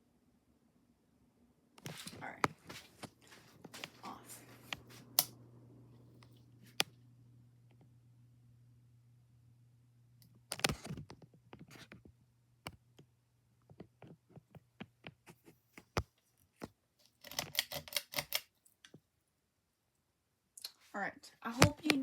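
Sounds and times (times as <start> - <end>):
ceiling fan humming: 1.7 - 13.8.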